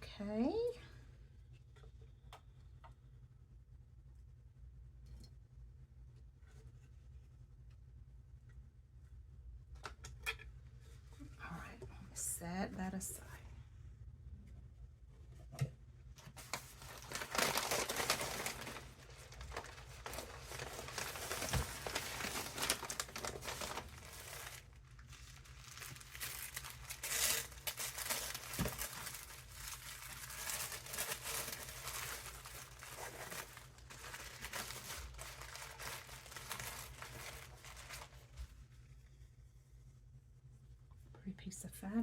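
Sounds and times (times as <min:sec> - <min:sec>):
paper crinkling and rustling: 0:16.2 - 0:38.8.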